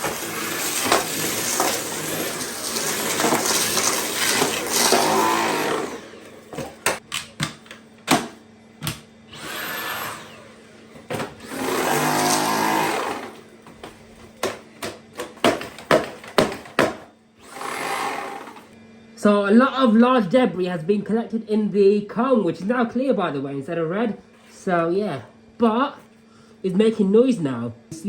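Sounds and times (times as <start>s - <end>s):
stick vacuum running: 0.0s - 18.8s.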